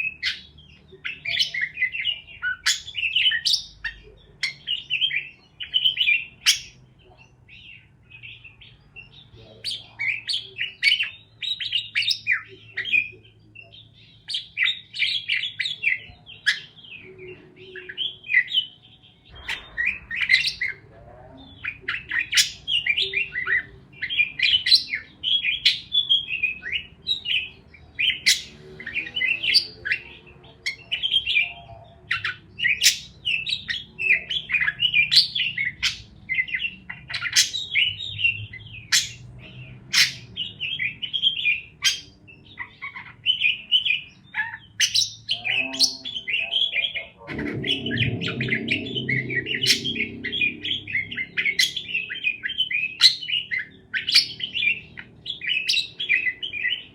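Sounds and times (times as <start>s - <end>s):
parakeets chirping and chattering: 0.0s - 56.9s
low rumble: 19.2s - 22.8s, 47.2s - 52.2s.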